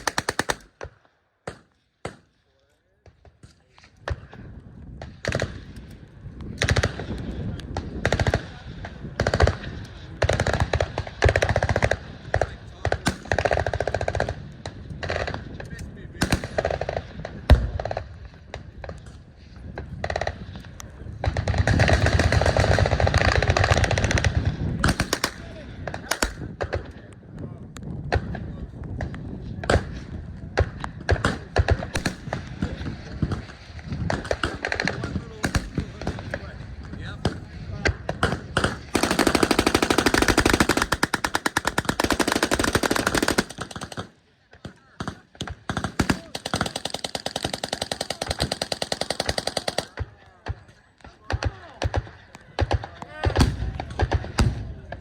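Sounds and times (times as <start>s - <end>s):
machine guns firing bursts: 0.0s - 2.2s, 6.6s - 7.1s, 8.0s - 15.6s, 16.2s - 18.1s, 21.2s - 26.9s, 30.6s - 36.4s, 37.2s - 50.1s
gunfire: 0.0s - 2.3s, 6.6s - 15.6s, 16.2s - 19.1s, 21.2s - 27.0s, 29.0s - 55.0s.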